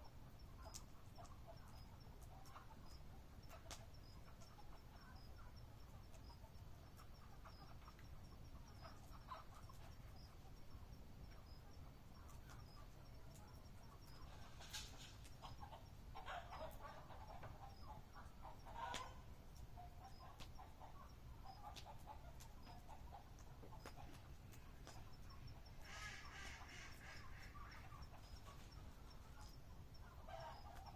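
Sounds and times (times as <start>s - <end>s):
faint high chirp: 0.0s - 23.0s, 24.6s - 30.9s.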